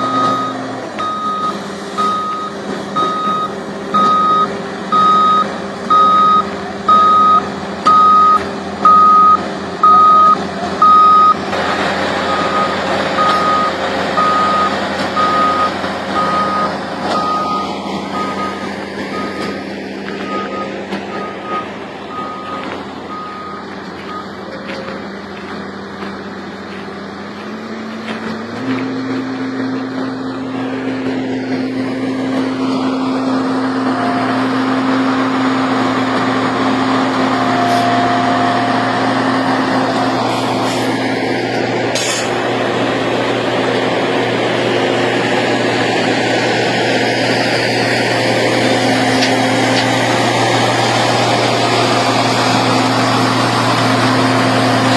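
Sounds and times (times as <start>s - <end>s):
reversing alarm beeping: 0.0s - 11.4s, 12.2s - 25.1s
heavy diesel machine running: 0.0s - 54.9s.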